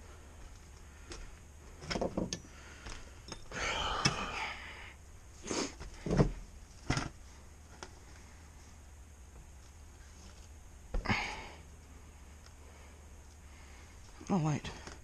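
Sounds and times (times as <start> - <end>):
breathy hiss: 2.5 - 6.0, 11.0 - 14.2.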